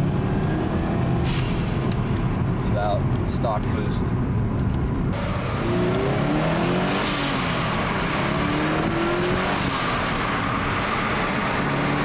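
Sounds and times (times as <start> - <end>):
car engine accelerating: 5.1 - 12.0.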